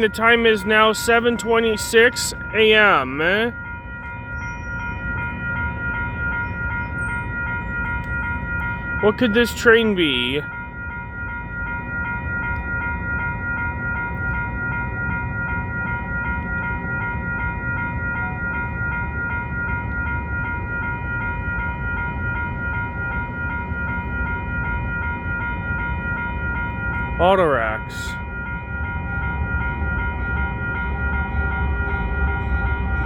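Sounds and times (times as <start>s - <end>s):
freight train rumbling past: 0.0s - 33.0s
level crossing bell ringing: 0.0s - 33.0s.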